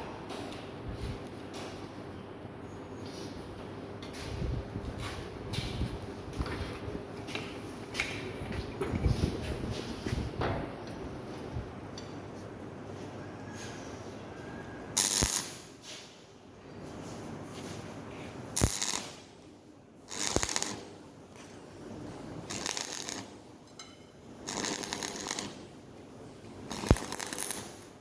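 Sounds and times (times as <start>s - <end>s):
arc welder crackling: 14.9s - 16.1s, 17.8s - 28.0s.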